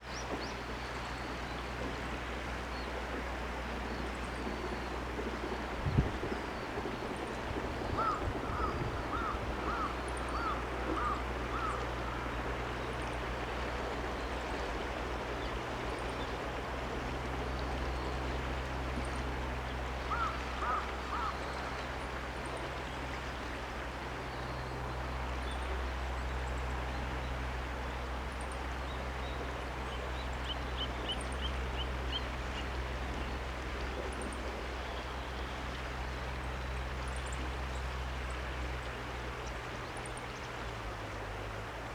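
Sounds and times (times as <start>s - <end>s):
water flowing: 0.0s - 41.9s
bird calling: 7.9s - 12.2s, 20.1s - 21.7s.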